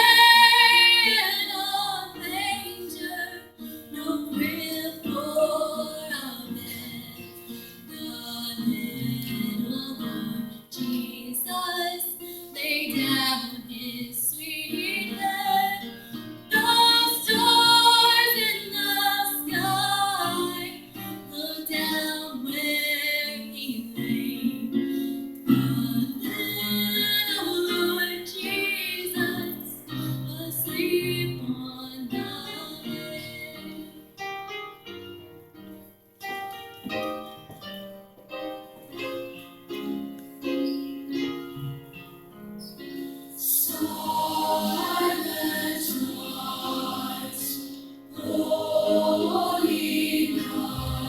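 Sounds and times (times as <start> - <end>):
school chorus singing: 0.0 - 3.4, 4.1 - 7.1, 16.5 - 23.5, 30.5 - 34.0, 43.4 - 51.0
instrumental accompaniment: 32.2 - 51.0.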